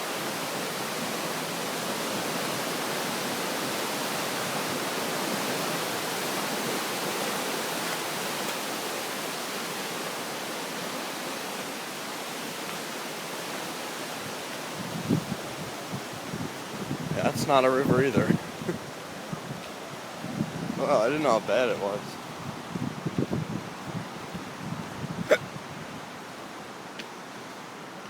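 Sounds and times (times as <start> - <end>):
river floodwater rushing: 0.0 - 28.0.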